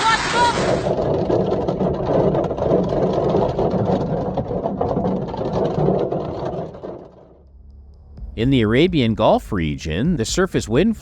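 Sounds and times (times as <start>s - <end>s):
steady low hum: 7.4s - 11.0s.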